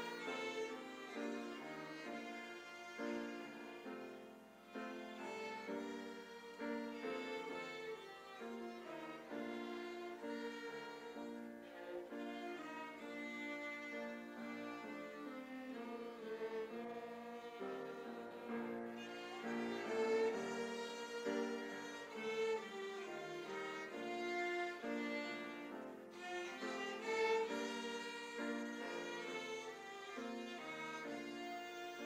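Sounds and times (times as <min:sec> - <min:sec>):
bowed string melody: 0:00.0 - 0:32.0.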